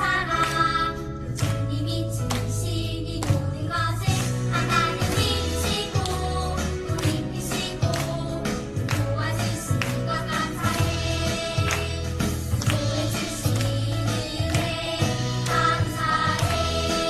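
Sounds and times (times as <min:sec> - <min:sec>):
bass guitar: 0:00.0 - 0:17.0
children singing together: 0:03.8 - 0:08.3, 0:08.9 - 0:17.0.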